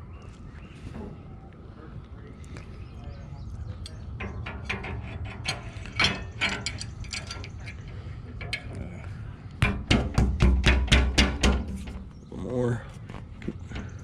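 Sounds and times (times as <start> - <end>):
metal clicks: 3.8 - 8.8.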